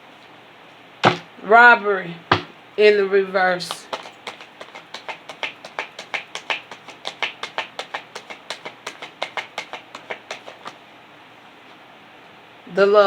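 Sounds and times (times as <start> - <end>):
cards being shuffled: 3.6 - 10.8.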